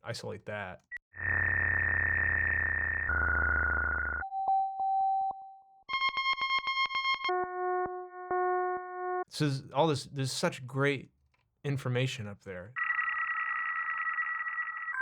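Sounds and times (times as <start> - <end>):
buzzy electronic tones: 1.1 - 4.2.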